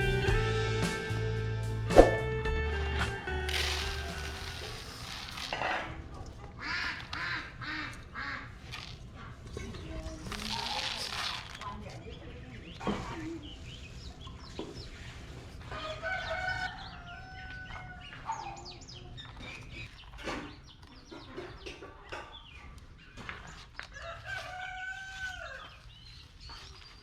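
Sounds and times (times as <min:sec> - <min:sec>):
chickens clucking and chirping: 0:11.5 - 0:27.0
rooster crowing: 0:15.7 - 0:18.2, 0:24.0 - 0:25.8.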